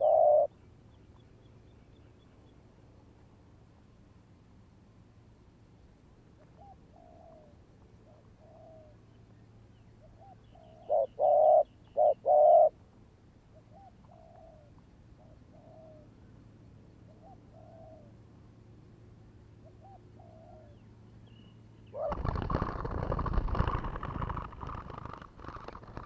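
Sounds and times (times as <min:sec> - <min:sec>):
doves cooing: 0:00.0 - 0:00.5, 0:10.6 - 0:12.8, 0:22.0 - 0:26.0.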